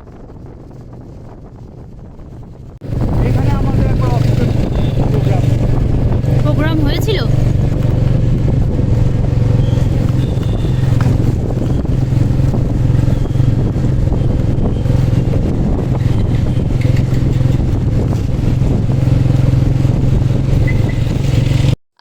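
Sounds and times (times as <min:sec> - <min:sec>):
vehicle engine and road noise: 0:00.0 - 0:21.8
wind buffeting microphone: 0:00.0 - 0:21.8.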